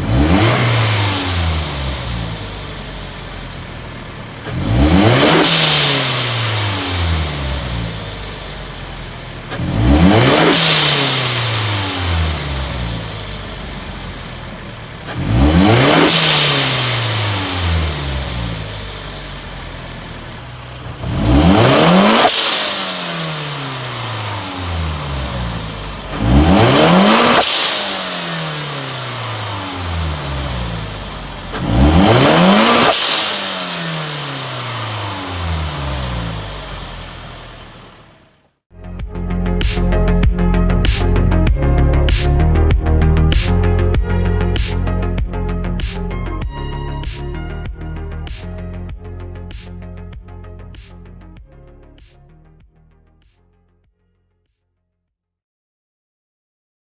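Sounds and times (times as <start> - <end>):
car engine revving: 0.0 - 38.5.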